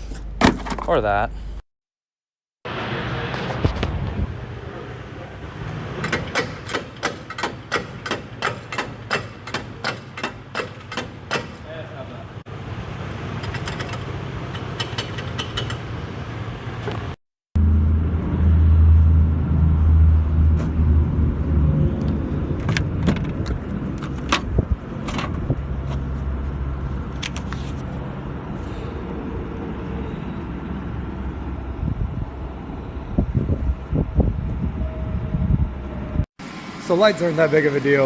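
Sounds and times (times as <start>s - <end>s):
sharp clicks and knocks: 6.0s - 11.7s, 13.4s - 15.9s
jingling metallic clicks: 13.4s - 15.9s.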